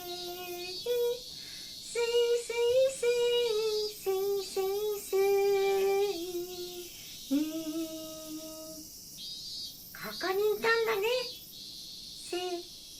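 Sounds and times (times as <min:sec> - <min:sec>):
high childlike voice singing: 0:00.0 - 0:01.3, 0:01.9 - 0:08.8, 0:10.1 - 0:11.3, 0:12.2 - 0:12.7.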